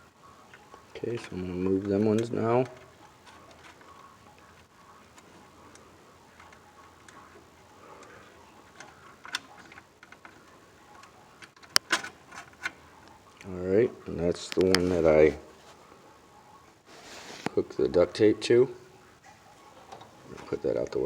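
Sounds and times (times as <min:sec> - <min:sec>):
wire connectors clicking: 0:00.5 - 0:13.5.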